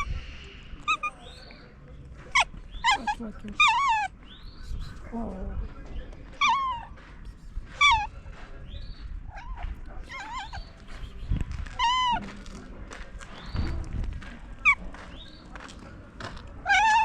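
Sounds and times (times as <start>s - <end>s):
cat meowing: 2.4s - 4.1s, 6.4s - 6.9s, 7.8s - 8.1s, 9.3s - 10.7s, 11.8s - 12.3s, 16.6s - 17.0s.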